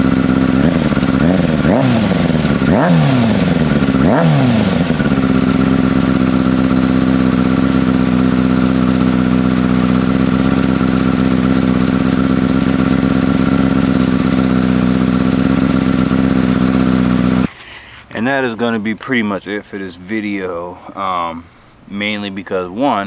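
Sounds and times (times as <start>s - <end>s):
motorcycle engine revving and idling: 0.0s - 17.5s.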